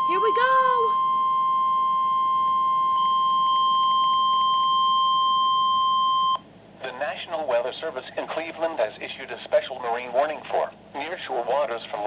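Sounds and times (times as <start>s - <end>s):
high-pitched alert tone: 0.0s - 1.0s.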